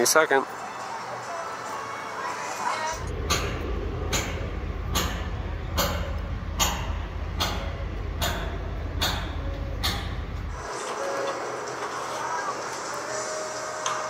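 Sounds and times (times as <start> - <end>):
low engine drone: 2.9 - 10.7.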